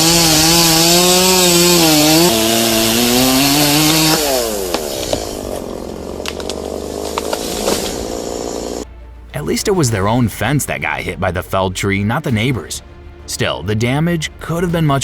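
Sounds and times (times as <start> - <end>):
chainsaw cutting at high revs: 0.0 - 8.8.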